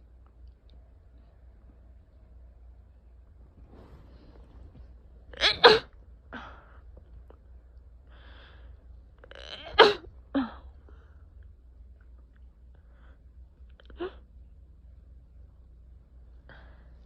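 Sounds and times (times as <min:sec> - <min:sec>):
person sneezing: 0:05.4 - 0:05.9, 0:09.4 - 0:10.1.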